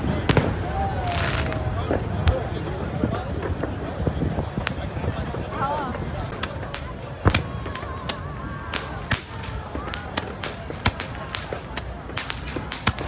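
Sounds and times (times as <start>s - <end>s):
fireworks cracks and pops: 0.1s - 13.0s
loud firework bang: 6.4s - 13.0s.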